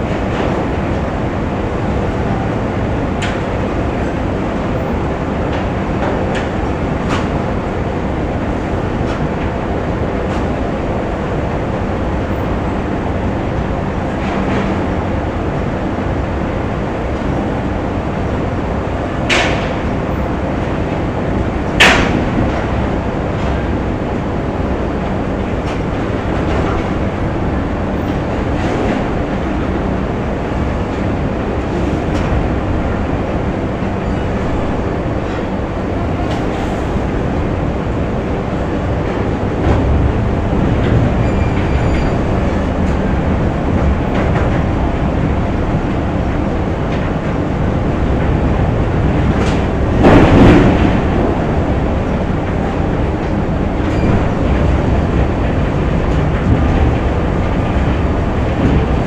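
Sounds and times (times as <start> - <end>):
machinery rumble and hum: 0.0 - 59.0.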